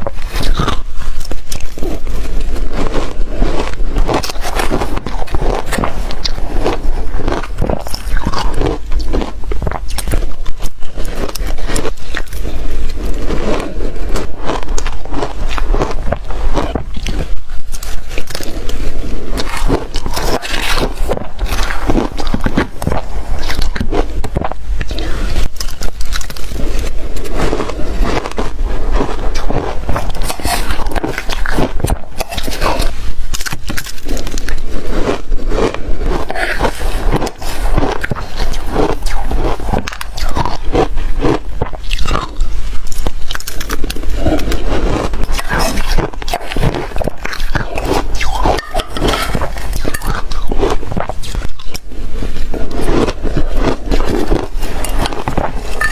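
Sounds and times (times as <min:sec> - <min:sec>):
chewing crunchy ice: 0:00.0 - 0:55.9.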